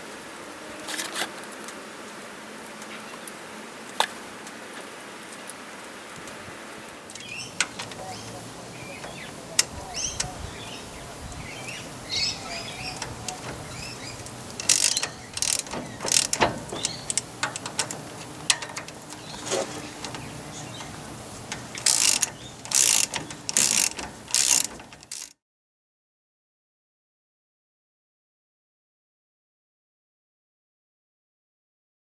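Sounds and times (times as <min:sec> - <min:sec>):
ratchet wrench clicking: 0:07.2 - 0:10.7, 0:11.3 - 0:25.3.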